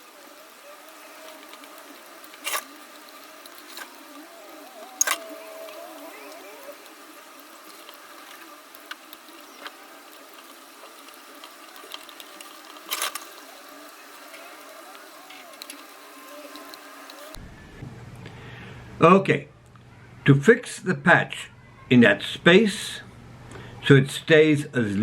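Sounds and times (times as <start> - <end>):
faint wavering tones: 0.0 - 18.0
steady low hiss: 0.0 - 25.0.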